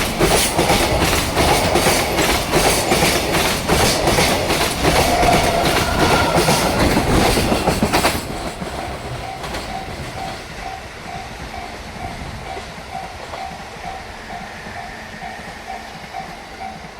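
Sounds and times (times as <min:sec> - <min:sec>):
freight wagons clattering over rails: 0:00.0 - 0:10.7.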